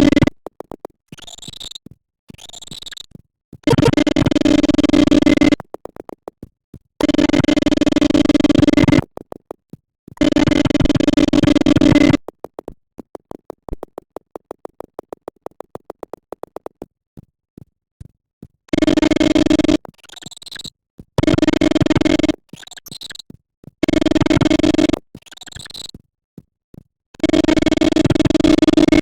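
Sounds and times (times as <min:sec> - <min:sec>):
loud electronic buzzing tone: 0:00.0 - 0:00.3, 0:03.7 - 0:05.6, 0:07.0 - 0:09.0, 0:10.2 - 0:12.2, 0:18.7 - 0:19.9, 0:21.2 - 0:23.2, 0:23.8 - 0:25.0, 0:27.2 - 0:29.0
rapid electronic clicks: 0:00.0 - 0:09.6, 0:10.2 - 0:16.9, 0:18.7 - 0:26.0, 0:27.2 - 0:29.0.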